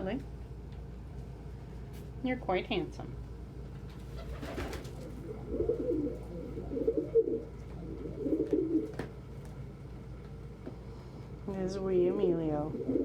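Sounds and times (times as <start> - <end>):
pigeon cooing: 4.1 - 9.0, 12.7 - 13.0.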